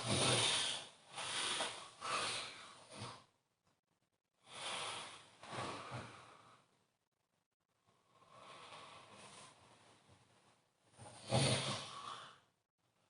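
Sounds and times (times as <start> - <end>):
person snoring: 0.0 - 3.2, 11.1 - 12.5.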